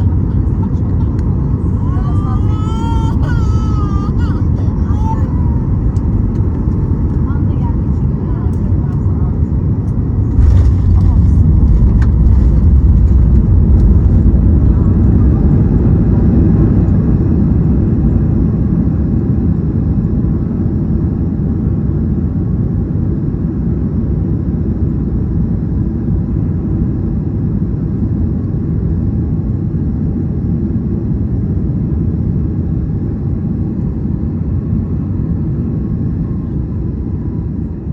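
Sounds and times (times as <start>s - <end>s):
faint steady whine: 0.0s - 18.1s
airliner engines rumbling: 0.0s - 37.9s.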